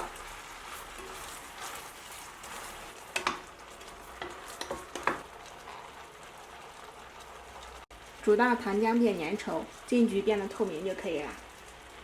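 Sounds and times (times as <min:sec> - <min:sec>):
utensil scraping pot: 0:00.0 - 0:06.0.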